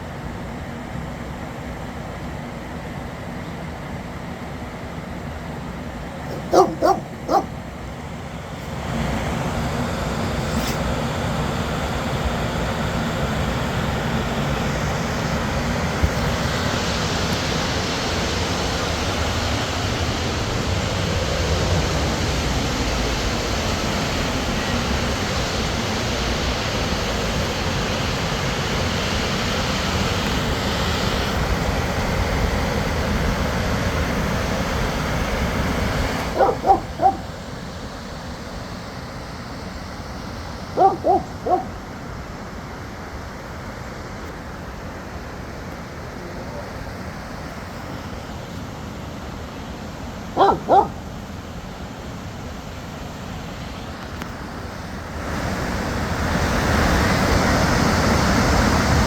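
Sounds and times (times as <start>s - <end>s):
steady rushing noise: 5.8s - 43.6s
short loud animal calls: 6.3s - 7.6s, 36.4s - 37.3s, 40.8s - 41.8s.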